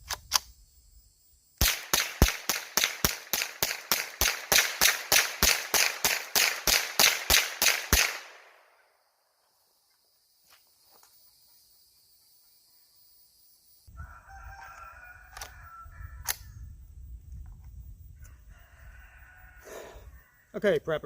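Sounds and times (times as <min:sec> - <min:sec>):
rifle fired rapidly: 0:01.6 - 0:08.5.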